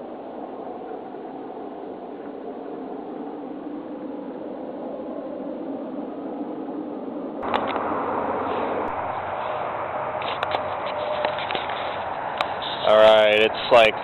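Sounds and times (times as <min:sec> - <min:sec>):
distant droning rumble: 0:00.0 - 0:14.0.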